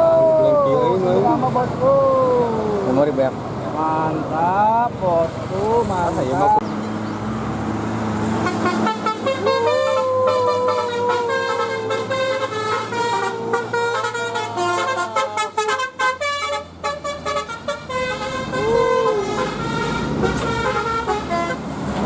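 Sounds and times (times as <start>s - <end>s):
bus multi-tone horn melody: 8.4s - 21.9s.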